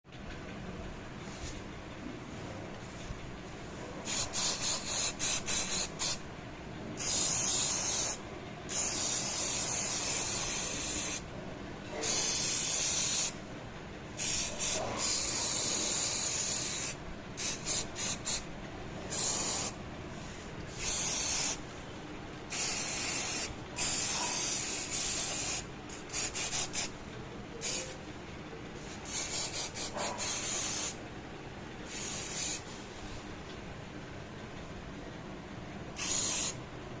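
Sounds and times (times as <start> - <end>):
steady background noise: 0.1 - 37.0
coating spray hissing: 4.0 - 6.2, 7.0 - 11.2, 12.0 - 13.4, 14.2 - 18.4, 19.1 - 21.6, 22.5 - 26.9, 27.6 - 28.0, 28.8 - 31.0, 31.8 - 32.9, 36.0 - 36.6.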